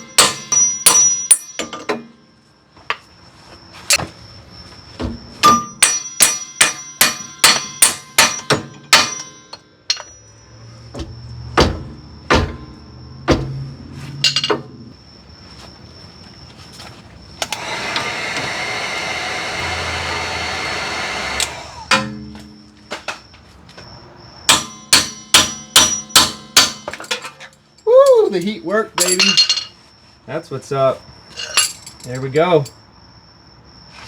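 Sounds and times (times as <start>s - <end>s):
hammer striking steel: 0.0s - 2.0s, 5.4s - 10.3s, 24.5s - 27.0s.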